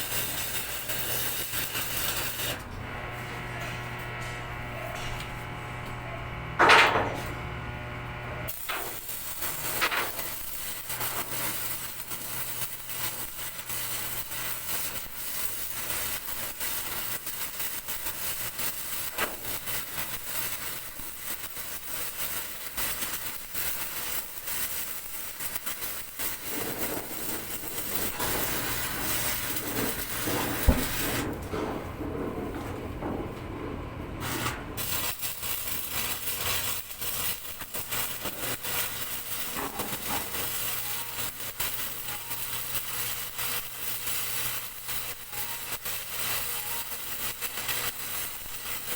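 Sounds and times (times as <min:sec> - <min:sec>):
steady machine hum: 0:00.0 - 0:11.8, 0:26.1 - 0:43.5
welding arc crackling and hissing: 0:00.0 - 0:33.1, 0:34.2 - 0:48.9.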